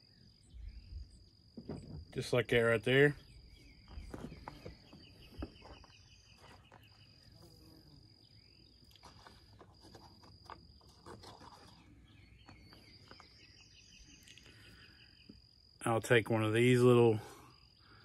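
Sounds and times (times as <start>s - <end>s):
insect pulsed chirping: 0.0s - 18.0s
insect buzzing: 3.2s - 15.8s.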